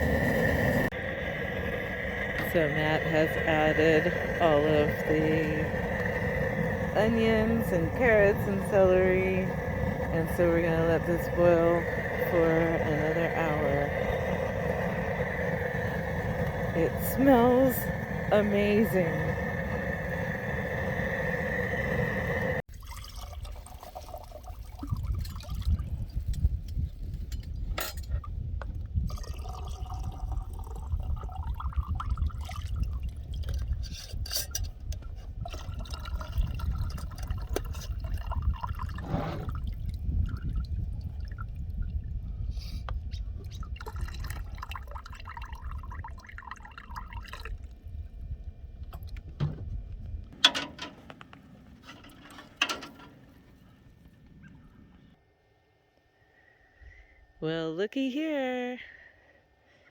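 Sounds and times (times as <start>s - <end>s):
steady hum: 0.0s - 22.6s
low burner rumble: 0.0s - 22.7s, 24.1s - 55.3s
pot boiling and bubbling: 0.0s - 55.2s.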